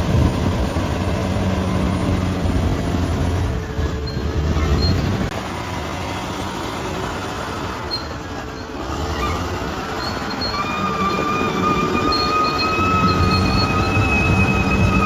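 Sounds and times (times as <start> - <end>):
bulldozer engine and tracks grinding: 0.0 - 15.0
high squeals of crawler tracks: 0.0 - 15.0.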